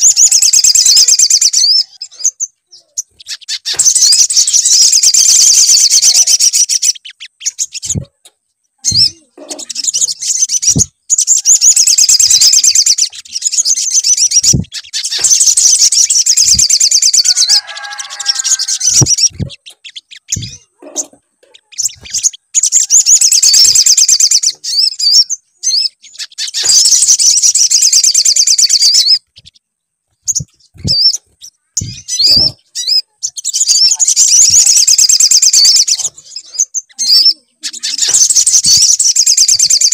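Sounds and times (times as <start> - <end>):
bird twittering chatter: 0.0 - 39.9
low-pitched bird call: 14.2 - 21.2.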